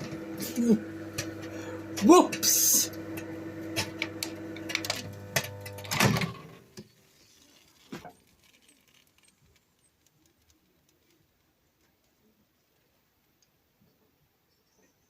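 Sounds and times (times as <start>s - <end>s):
microwave clicks: 0.0s - 6.4s
microwave clunk: 0.0s - 6.5s
microwave oven hum: 0.0s - 6.7s.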